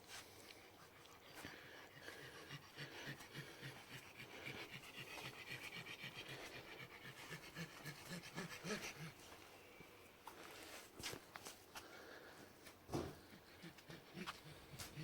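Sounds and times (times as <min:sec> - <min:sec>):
dog panting: 0:00.2 - 0:09.6, 0:13.1 - 0:15.0.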